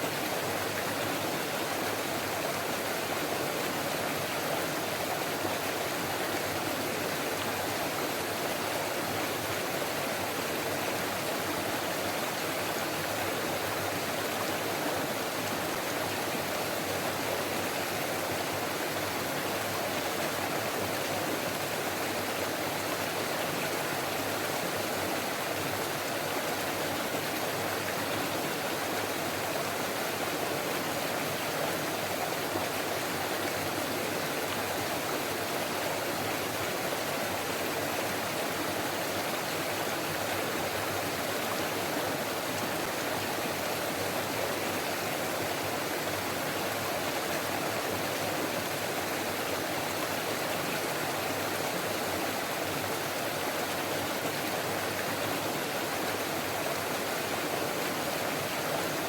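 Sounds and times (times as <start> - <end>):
stream flowing over rocks: 0.0 - 59.0.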